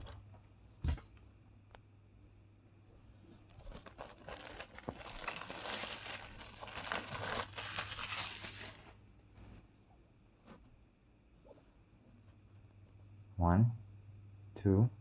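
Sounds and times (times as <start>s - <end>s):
packaging crinkling: 3.4s - 9.1s.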